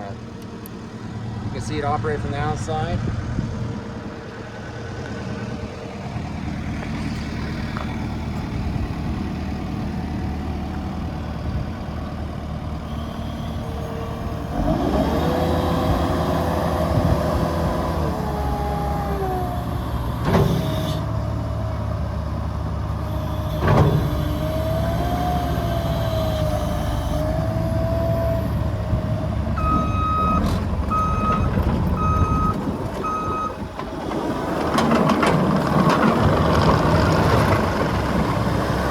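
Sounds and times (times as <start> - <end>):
diesel loader engine running: 0.0 - 38.9
backup alarm beeping: 29.6 - 33.6.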